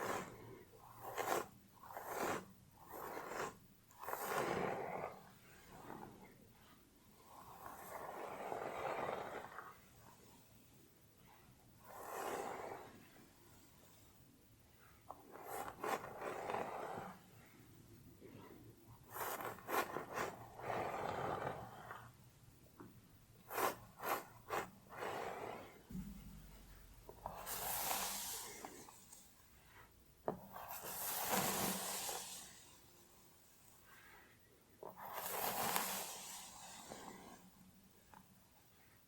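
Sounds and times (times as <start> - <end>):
scratching hair and scalp: 0.0 - 6.2, 15.2 - 17.5, 19.0 - 22.1, 23.5 - 26.1, 27.2 - 29.3, 30.6 - 32.8, 35.0 - 37.4.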